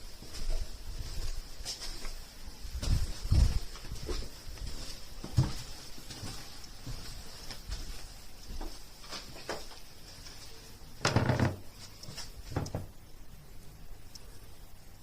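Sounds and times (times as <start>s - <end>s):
knocks and thumps: 12.5s - 13.0s.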